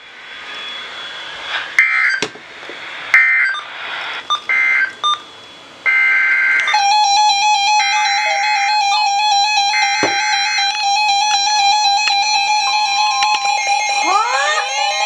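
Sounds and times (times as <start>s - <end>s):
steady electronic tone pattern: 5.9s - 15.0s.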